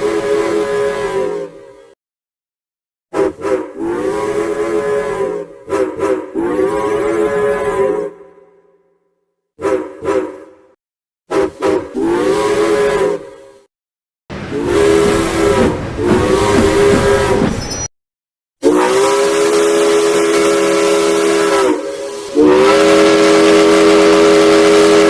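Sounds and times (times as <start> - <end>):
steam locomotive whistle: 6.4 - 7.1, 21.6 - 25.0
steam hissing: 14.6 - 17.9.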